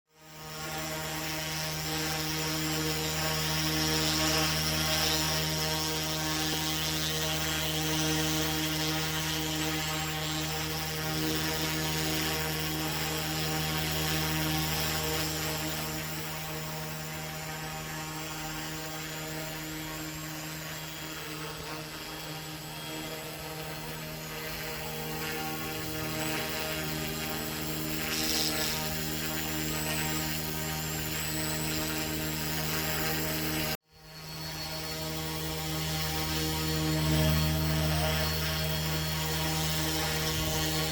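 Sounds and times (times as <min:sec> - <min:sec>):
toy helicopter motor whine: 0:00.1 - 0:40.9.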